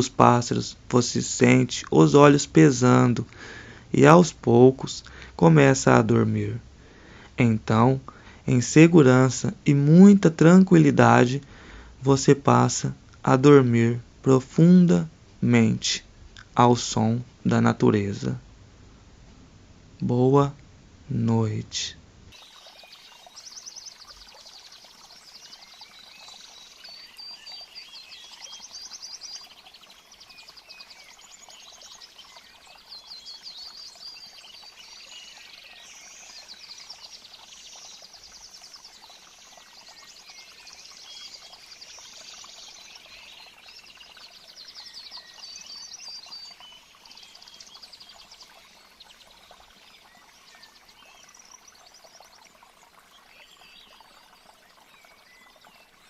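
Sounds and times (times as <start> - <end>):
flowing water hiss: 0.0 - 18.4, 22.3 - 56.0
birds chirping and trilling: 22.3 - 56.0.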